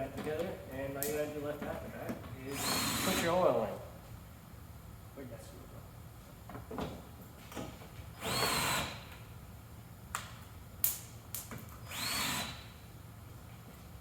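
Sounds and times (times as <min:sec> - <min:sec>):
power drill whining: 0:02.5 - 0:03.4, 0:08.2 - 0:09.1, 0:11.8 - 0:12.8.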